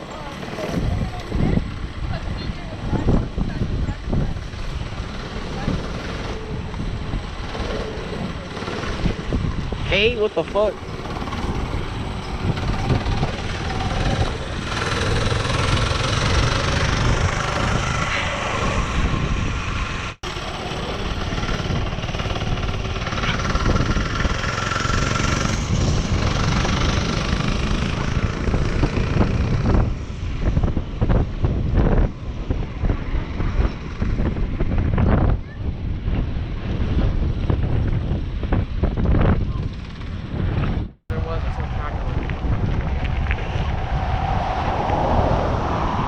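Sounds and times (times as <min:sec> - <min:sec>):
wind buffeting microphone: 0:00.0 - 0:46.0
small motorcycle engine running: 0:04.2 - 0:19.3, 0:20.2 - 0:29.9.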